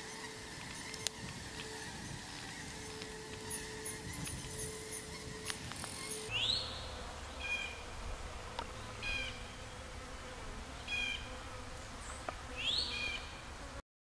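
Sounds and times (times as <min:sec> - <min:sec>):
bird chirping: 0:00.0 - 0:07.9, 0:10.8 - 0:13.4
bee swarm buzzing: 0:00.0 - 0:13.8.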